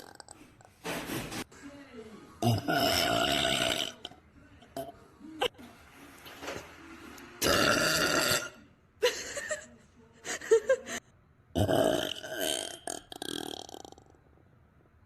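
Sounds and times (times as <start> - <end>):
girl burping: 2.4 - 4.0, 7.4 - 8.6.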